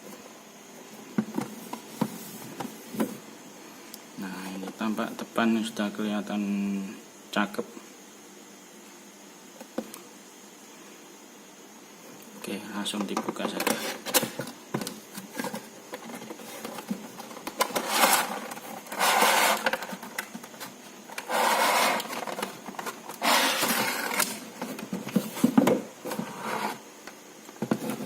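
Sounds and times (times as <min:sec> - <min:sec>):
plastic packaging rustling: 0:15.2 - 0:26.2.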